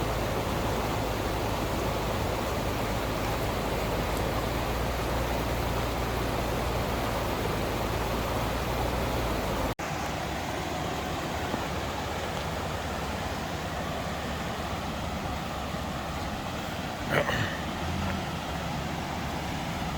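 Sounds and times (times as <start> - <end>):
engine drone: 0.0 - 19.9
road and wind noise: 0.0 - 19.9.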